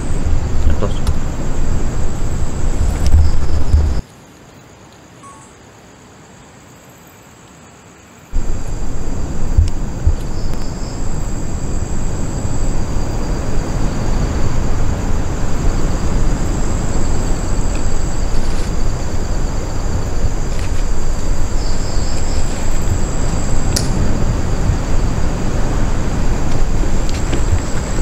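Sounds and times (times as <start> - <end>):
insects chirring: 0.0 - 28.0
loud low rushing noise: 8.4 - 28.0.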